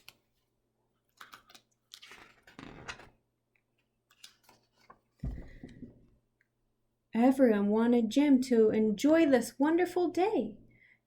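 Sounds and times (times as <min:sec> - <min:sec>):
paper page turning: 0:01.2 - 0:03.2.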